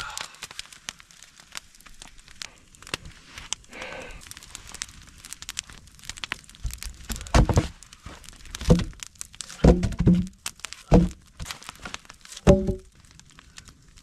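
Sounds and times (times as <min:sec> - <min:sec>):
crinkling rustle: 0:00.0 - 0:14.0
hollow thunks: 0:07.1 - 0:07.7, 0:08.6 - 0:09.0, 0:09.6 - 0:11.2, 0:12.5 - 0:12.9.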